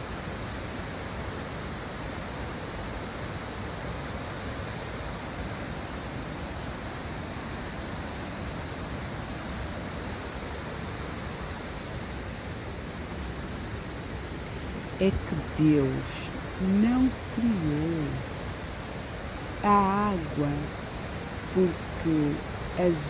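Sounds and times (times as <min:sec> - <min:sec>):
rushing water: 0:00.0 - 0:23.0.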